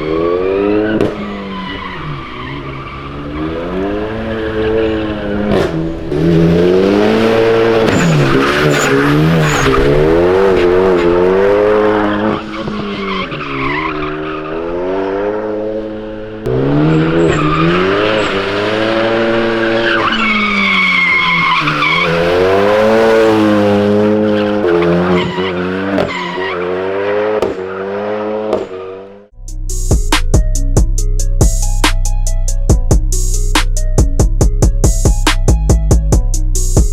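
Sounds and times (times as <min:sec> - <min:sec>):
car engine revving: 0:00.0 - 0:29.4
tyres squealing: 0:07.5 - 0:14.7, 0:16.7 - 0:28.3.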